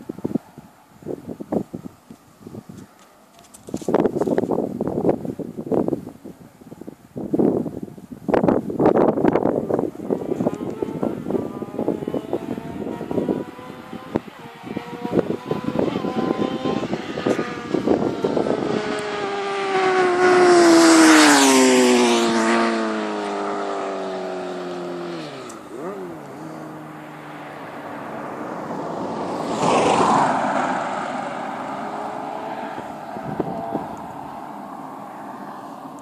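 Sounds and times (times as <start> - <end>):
motorcycle engine winding down: 22.2 - 27.8.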